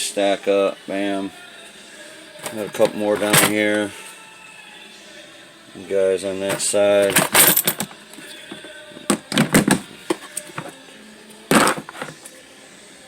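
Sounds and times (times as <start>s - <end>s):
hard plastic clacks and knocks: 8.5s - 10.7s.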